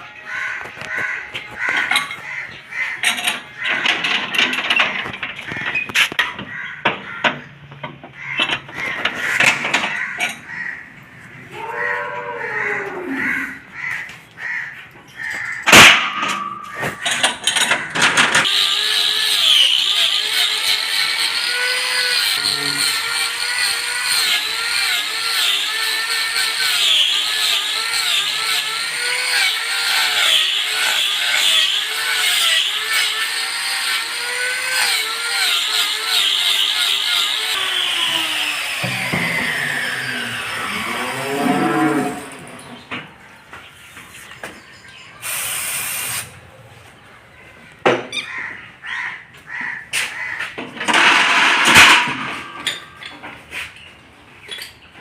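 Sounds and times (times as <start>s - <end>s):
power grinder cutting hoof: 0.4s - 7.2s, 15.7s - 42.8s, 50.2s - 53.0s.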